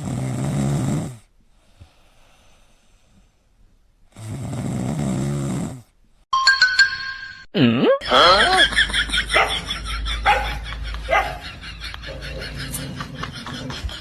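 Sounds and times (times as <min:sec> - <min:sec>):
rough snores: 0:00.0 - 0:02.3, 0:04.1 - 0:05.9
quiet breathing: 0:01.2 - 0:04.2.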